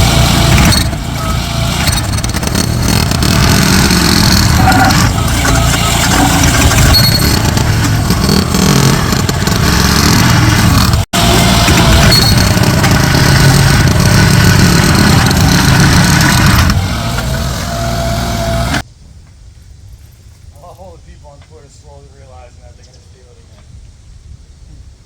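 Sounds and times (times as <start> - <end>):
heavy machinery engine running: 0.0 - 18.8.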